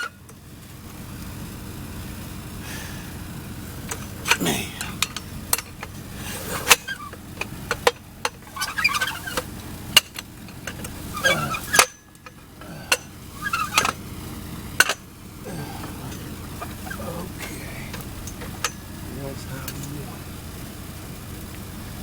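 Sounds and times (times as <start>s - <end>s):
birds calling: 0.0s - 22.0s
car jack metallic clicks: 3.8s - 14.1s, 14.7s - 15.1s.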